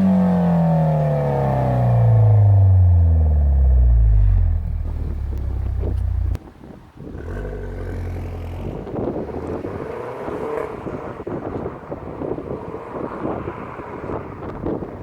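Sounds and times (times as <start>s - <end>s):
car engine running: 0.0s - 6.4s
wind noise on microphone: 1.3s - 15.0s.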